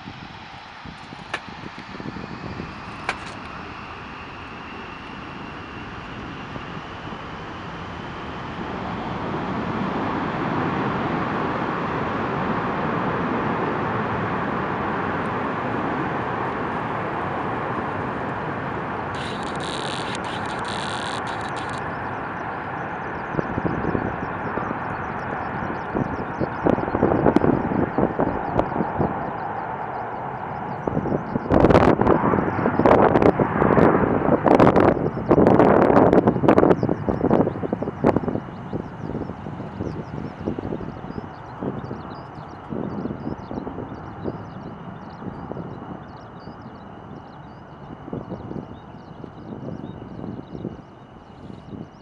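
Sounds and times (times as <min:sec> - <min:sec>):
faint rising whine: 0:00.0 - 0:52.0
jet engines roaring: 0:00.0 - 0:52.0
sharp clicks: 0:19.2 - 0:22.0.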